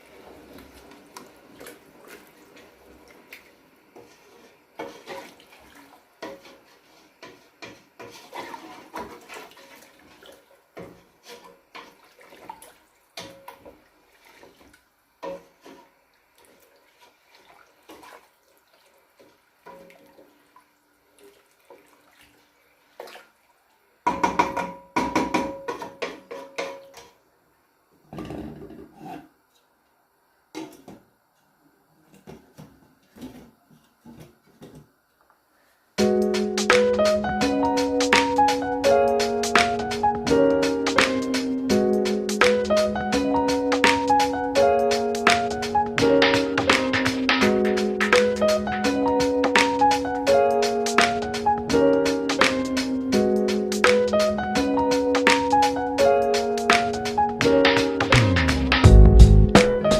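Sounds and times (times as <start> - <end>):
pots dishes and utensils clattering: 24.1 - 27.0.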